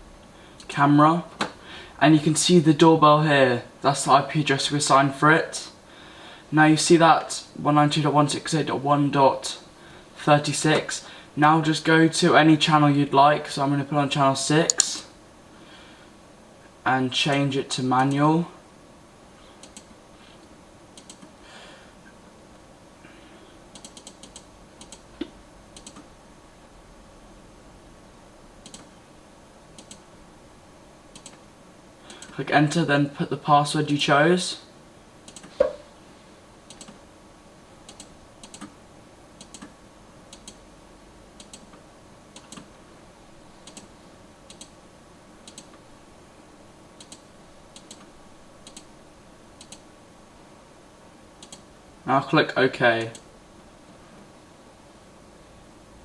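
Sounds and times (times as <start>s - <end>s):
light keyboard clicks: 28.6s - 28.9s, 29.8s - 30.0s, 31.1s - 31.4s, 36.7s - 37.0s, 39.4s - 39.7s, 43.6s - 43.9s, 47.8s - 48.9s, 51.4s - 51.6s
dull knock: 35.6s - 35.8s.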